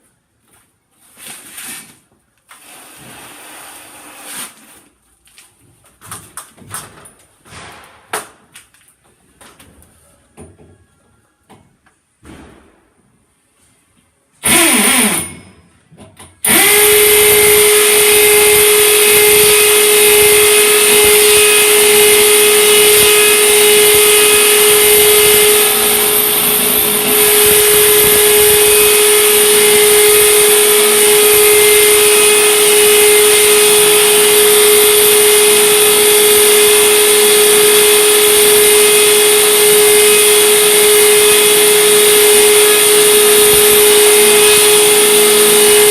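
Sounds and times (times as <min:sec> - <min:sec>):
power drill whining: 0:14.4 - 0:15.4, 0:16.4 - 0:45.9.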